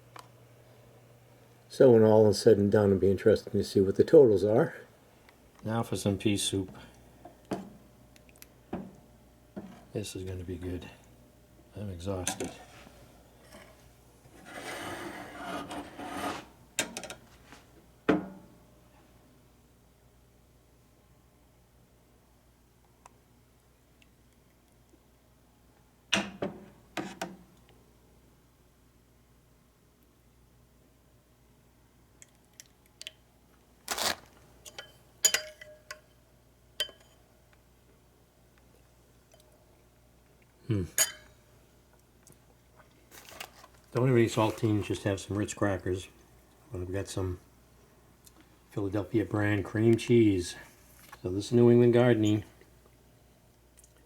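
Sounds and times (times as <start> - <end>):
dishes rubbing and scraping: 12.3 - 16.5
spoon clinking against ceramic bowl: 34.7 - 36.0, 36.8 - 37.2, 41.0 - 41.3.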